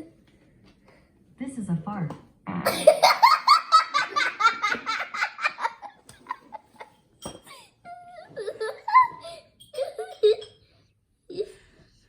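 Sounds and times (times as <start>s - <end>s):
boy laughing hard: 2.7s - 6.9s.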